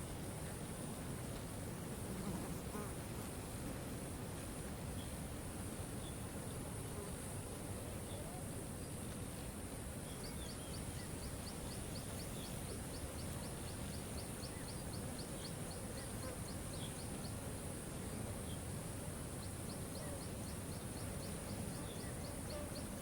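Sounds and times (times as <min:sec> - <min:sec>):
faint bird chirps: 0:19.4 - 0:23.0.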